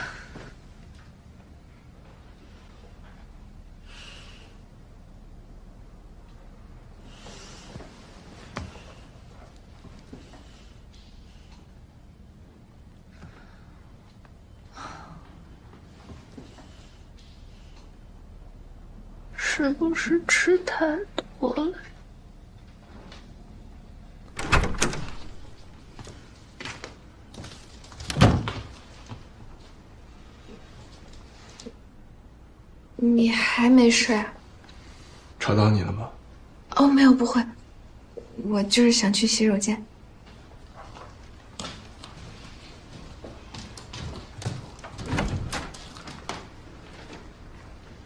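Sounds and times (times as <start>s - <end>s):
door clicks and knocks: 24.3s - 25.4s, 44.7s - 46.5s
door thump: 24.4s - 25.3s.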